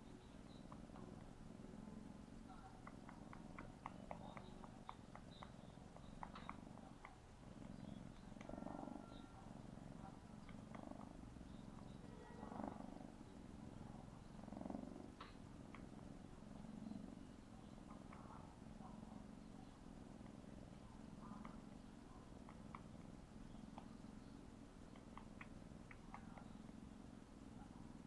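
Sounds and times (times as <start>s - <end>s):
kitten purring: 0.0s - 28.0s
soft lip-smacking clicks: 0.2s - 1.4s, 2.5s - 8.6s, 10.2s - 12.0s, 15.2s - 15.9s, 17.7s - 18.5s, 20.2s - 26.9s.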